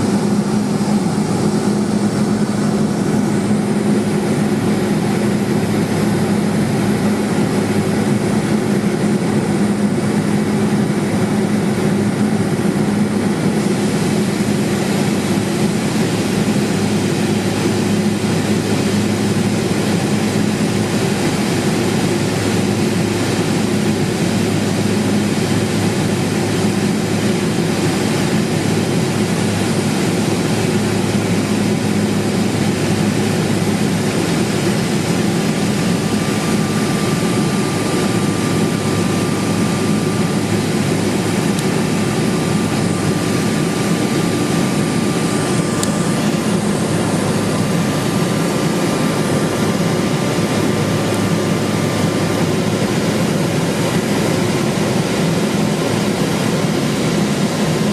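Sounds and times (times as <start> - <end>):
propeller and engine drone: 0.0 - 57.9.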